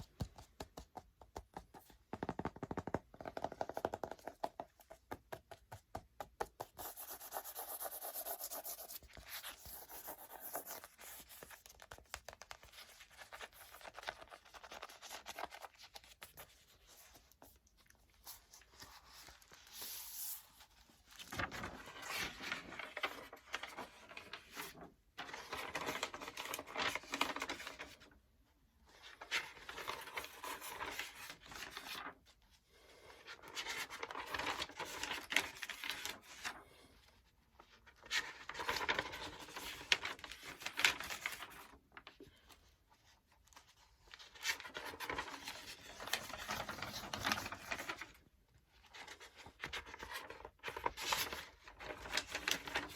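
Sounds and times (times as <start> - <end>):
book pages flipping and rustling: 0.0 - 28.1, 28.9 - 32.2, 33.4 - 48.2, 48.8 - 52.9.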